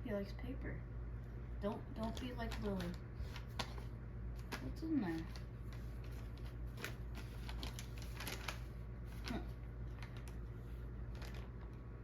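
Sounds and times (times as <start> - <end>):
steady low hum: 0.0 - 12.0
packing paper rustling: 2.0 - 11.8.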